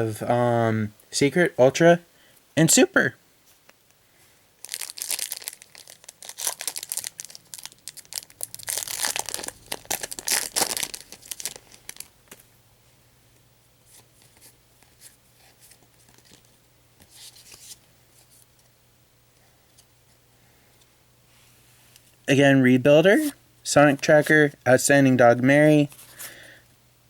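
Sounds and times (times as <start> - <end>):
foil wrapper tearing and crinkling: 4.6 - 12.4.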